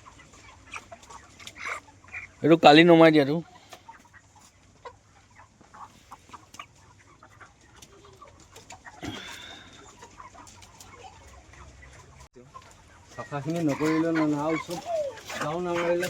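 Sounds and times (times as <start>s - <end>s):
chickens clucking: 0.0s - 16.0s
chicken call: 7.3s - 12.2s.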